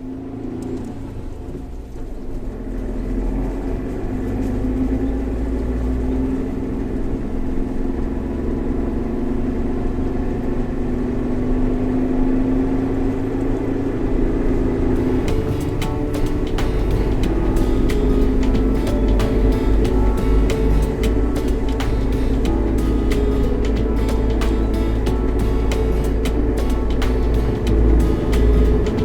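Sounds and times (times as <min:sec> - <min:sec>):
car engine droning: 0:14.8 - 0:29.0.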